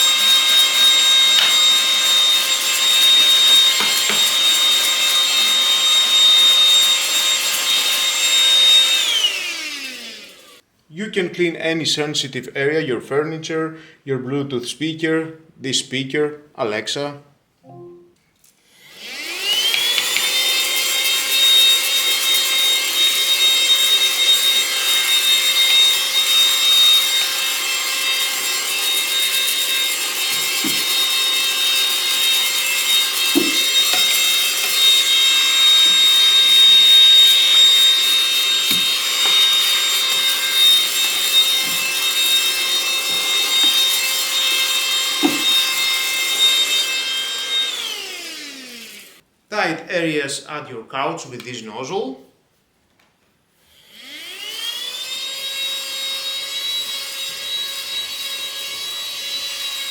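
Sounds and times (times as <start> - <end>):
handheld vacuum motor whine: 0.0 - 10.6, 18.7 - 49.2, 53.8 - 59.9.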